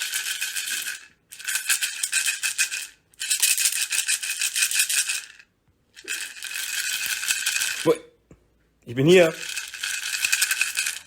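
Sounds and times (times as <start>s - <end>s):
container of pet food rattling: 9.4s - 11.0s.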